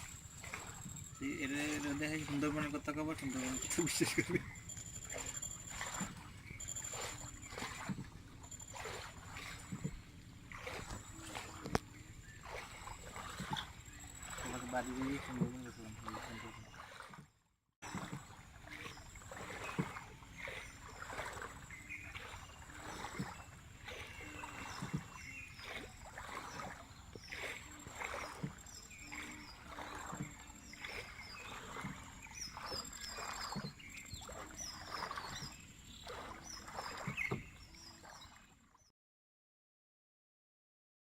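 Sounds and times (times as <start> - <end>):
high chirping: 0.0 - 9.8
steady high whine: 0.0 - 10.2
oar strokes in water: 0.0 - 38.8.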